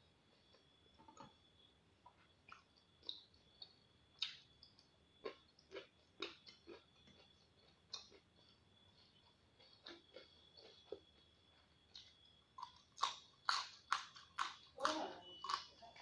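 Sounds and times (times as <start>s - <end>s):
chewing crunchy vegetables: 2.1s - 16.0s.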